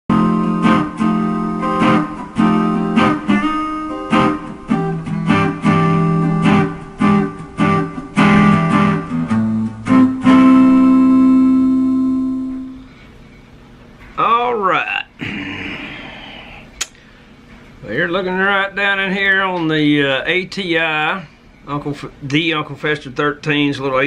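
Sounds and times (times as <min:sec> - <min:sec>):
strummed guitar chords: 0:00.1 - 0:13.1.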